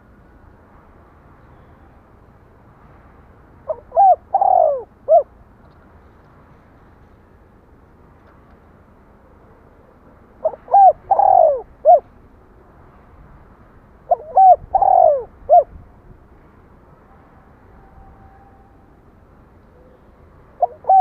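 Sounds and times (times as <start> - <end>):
dove cooing: 3.7 - 5.3, 10.4 - 12.1, 14.1 - 15.7, 19.8 - 21.0.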